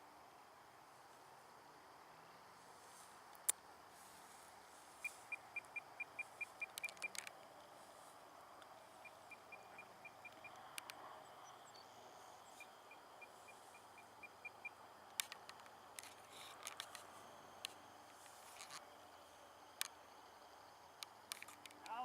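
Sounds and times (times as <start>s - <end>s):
faint outdoor background: 0.0s - 22.0s
sharp clicks: 5.0s - 7.4s, 8.6s - 11.0s, 14.2s - 18.8s, 20.9s - 22.0s.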